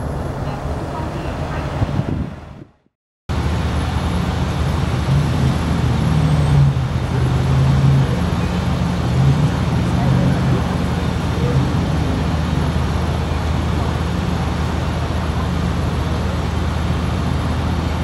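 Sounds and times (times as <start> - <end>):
traffic noise: 0.0 - 18.0
vehicle engine humming: 0.0 - 18.0.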